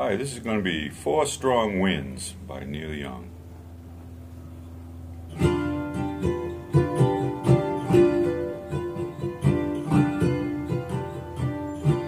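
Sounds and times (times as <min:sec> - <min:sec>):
ukulele strummed and picked: 0:05.4 - 0:12.0.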